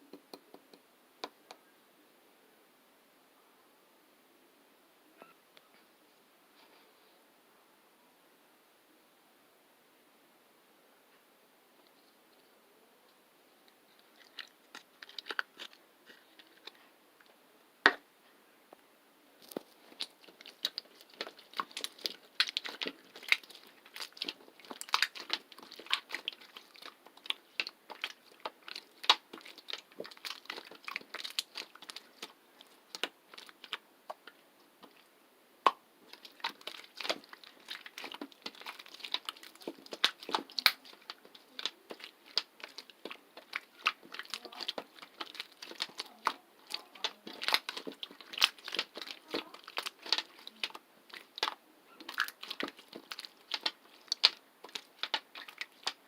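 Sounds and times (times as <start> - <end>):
slime squished by hand: 19.4 - 56.0.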